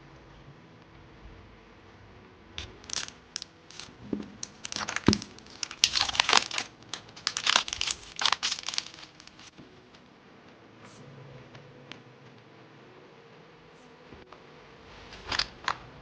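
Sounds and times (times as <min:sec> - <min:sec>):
packaging tearing: 0:02.6 - 0:09.5, 0:15.2 - 0:15.8
plastic packaging crinkling: 0:02.6 - 0:09.5, 0:15.2 - 0:15.8.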